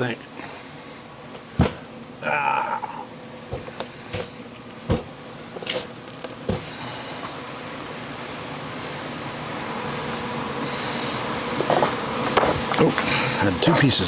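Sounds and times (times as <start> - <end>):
machine humming: 0.0 - 14.0
wooden boards knocking: 1.4 - 1.9, 3.4 - 6.7.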